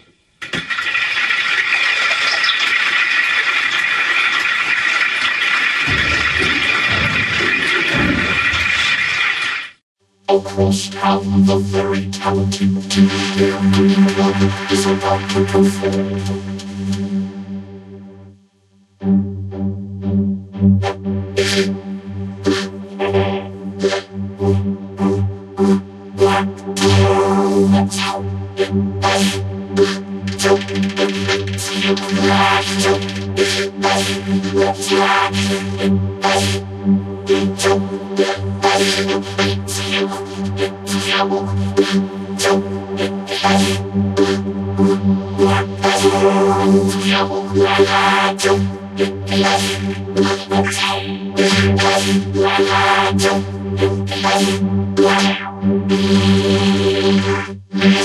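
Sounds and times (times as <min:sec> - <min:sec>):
hissing: 0:05.7 - 0:09.8
sharp noisy bursts: 0:05.7 - 0:09.8.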